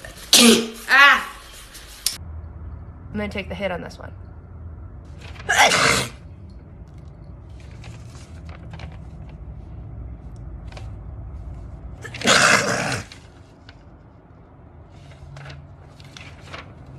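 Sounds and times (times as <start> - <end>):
person sneezing loudly: 0.2 - 0.9, 5.5 - 6.2
small rustles: 6.9 - 11.8, 14.8 - 16.9.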